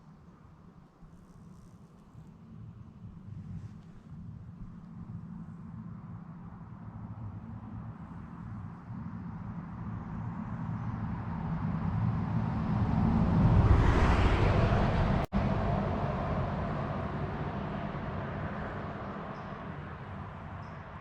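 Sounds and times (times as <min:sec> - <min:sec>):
car passing by: 0:11.0 - 0:21.0.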